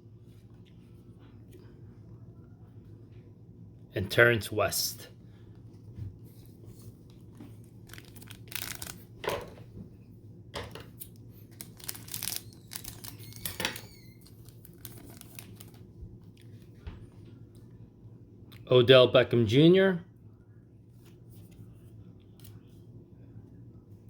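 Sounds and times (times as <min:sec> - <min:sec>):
wrapper being torn open: 0:07.6 - 0:09.1, 0:11.0 - 0:15.8
card pack wrapper crinkling: 0:07.6 - 0:09.2, 0:11.0 - 0:15.8.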